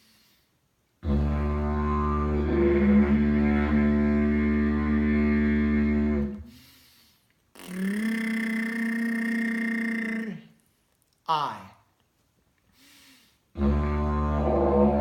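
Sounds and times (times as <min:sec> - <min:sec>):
didgeridoo drone: 0:01.1 - 0:06.4, 0:13.6 - 0:15.0
lip buzz: 0:07.5 - 0:10.7
person toning a vowel: 0:07.6 - 0:10.6.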